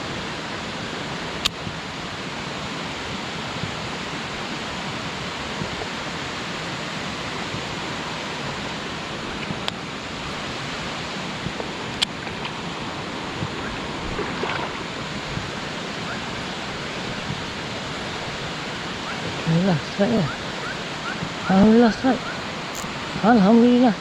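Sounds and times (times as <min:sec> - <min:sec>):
waterfall rushing: 0:00.0 - 0:24.0
sharp clicks: 0:22.7 - 0:23.0.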